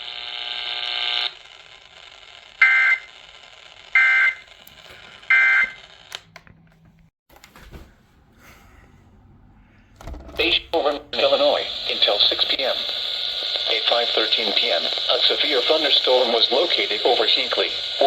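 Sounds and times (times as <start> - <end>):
steady buzzing tone: 0.0 - 4.6.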